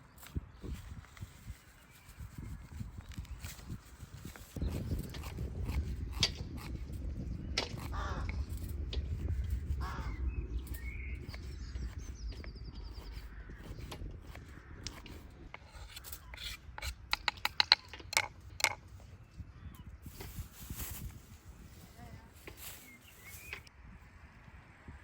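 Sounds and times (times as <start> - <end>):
steady low rumble: 4.3 - 16.3
bird calls: 7.3 - 21.1, 21.8 - 23.7.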